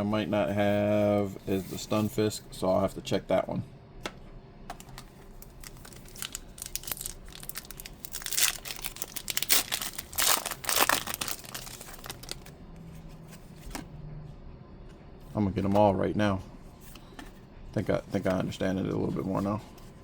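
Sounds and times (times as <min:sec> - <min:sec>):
foil pack crinkling and tearing: 0:05.4 - 0:12.5.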